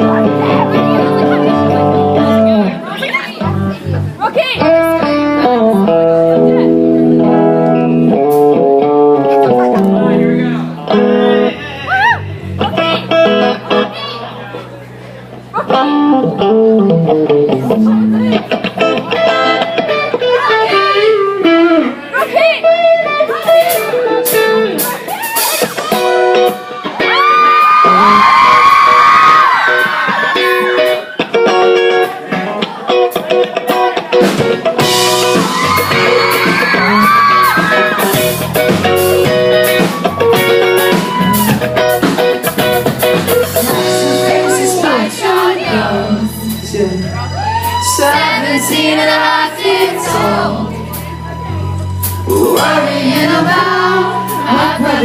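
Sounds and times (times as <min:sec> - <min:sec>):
electric guitar: 0:00.0 - 0:55.0
live rock band playing: 0:00.0 - 0:55.0
drum kit beat: 0:03.4 - 0:11.6, 0:22.6 - 0:51.2, 0:51.9 - 0:55.0
person singing: 0:43.6 - 0:51.0, 0:52.1 - 0:55.0.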